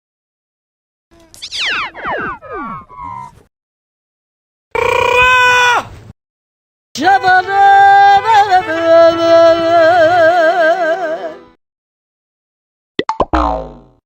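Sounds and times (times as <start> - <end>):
long wobbling voice-like tone: 1.2 - 3.4.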